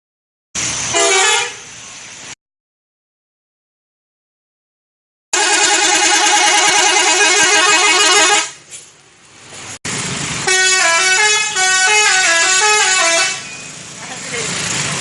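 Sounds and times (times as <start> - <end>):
multi-tone musical bus horn: 0.9 - 1.8, 5.3 - 8.7, 10.4 - 13.6.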